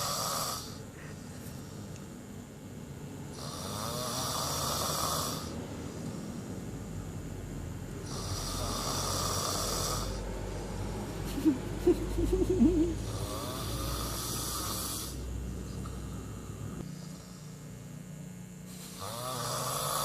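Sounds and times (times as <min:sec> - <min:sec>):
person snoring: 0:00.0 - 0:01.9, 0:03.3 - 0:06.5, 0:08.0 - 0:17.6, 0:18.7 - 0:20.0.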